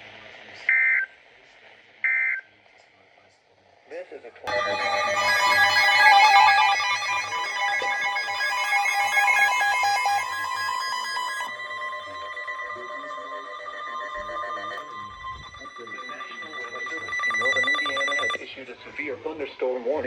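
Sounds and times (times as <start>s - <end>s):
steady electronic tones: 4.5s - 18.4s
warbling digital data bursts: 4.5s - 18.4s.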